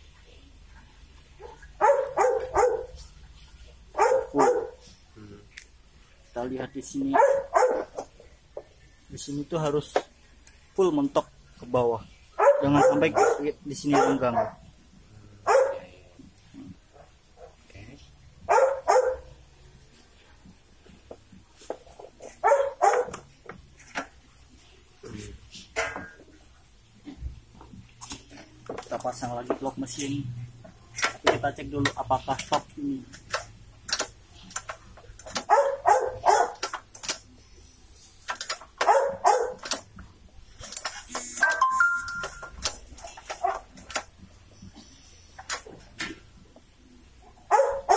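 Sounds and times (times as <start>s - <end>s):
dog barking: 1.4s - 3.0s, 3.9s - 4.8s, 7.1s - 8.0s, 12.4s - 14.6s, 15.4s - 15.9s, 18.5s - 19.4s, 22.3s - 23.2s, 35.4s - 36.7s, 38.8s - 39.7s, 43.4s - 43.6s, 47.5s - 47.9s
sharp clicks and knocks: 27.6s - 35.6s, 36.5s - 37.4s, 38.2s - 39.0s, 39.6s - 44.2s.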